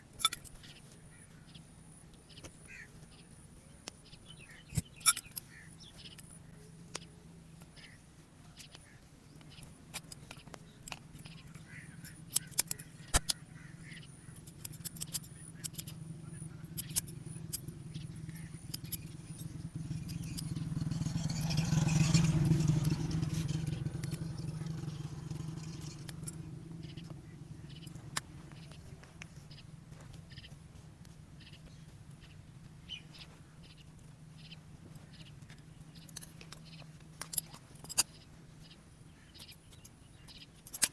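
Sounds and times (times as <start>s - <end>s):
sharp clicks: 3.8s - 7.9s, 8.6s - 13.4s, 14.3s - 16.0s, 16.7s - 40.9s.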